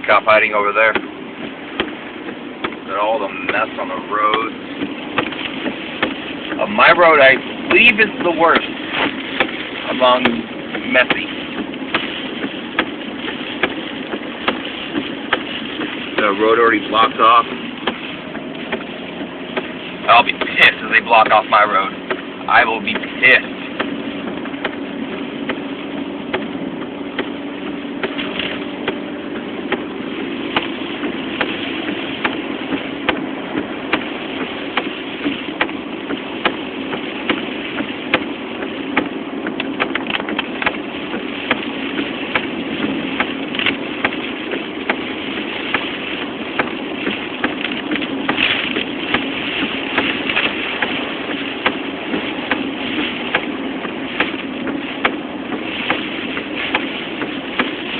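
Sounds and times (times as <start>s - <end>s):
car engine and tyre noise: 0.0s - 57.9s.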